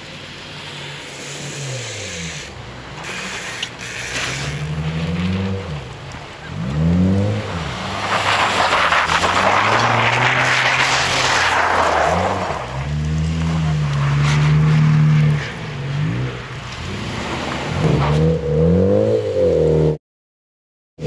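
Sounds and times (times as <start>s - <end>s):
car engine revving: 0.1s - 20.0s
tyre noise rushing: 7.3s - 15.6s.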